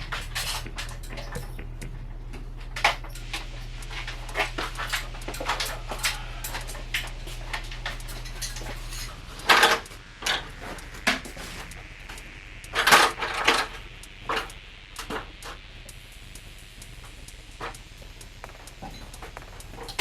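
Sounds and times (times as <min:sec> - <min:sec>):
ringing clanks: 0:00.0 - 0:20.0
steady low hum: 0:00.0 - 0:20.0.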